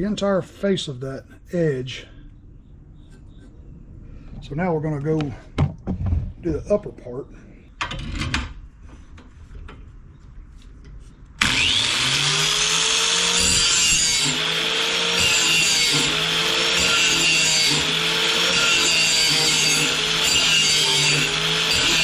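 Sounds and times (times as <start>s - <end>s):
grinder grinding metal blade: 11.4s - 22.0s.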